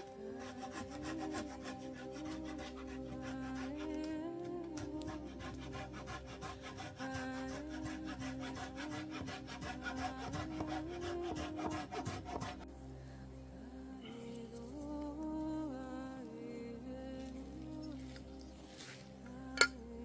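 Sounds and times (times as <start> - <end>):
hand saw cutting wood: 0.0 - 4.2, 4.8 - 12.7
calm background music: 0.0 - 20.0.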